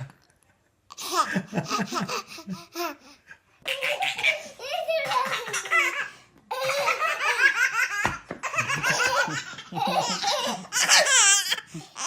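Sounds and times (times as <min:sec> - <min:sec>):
baby laughing: 0:03.6 - 0:12.0.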